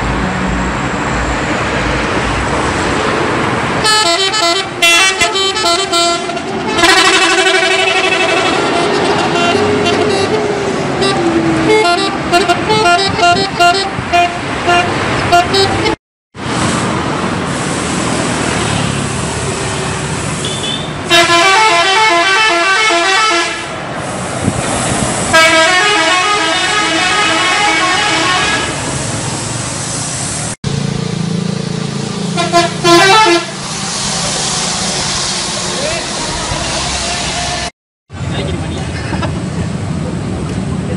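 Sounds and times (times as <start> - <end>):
bus engine: 0.0 - 40.9
traffic noise: 0.0 - 40.9
musical air horns tune: 3.8 - 16.0, 20.4 - 23.7, 25.3 - 28.8, 32.4 - 33.6.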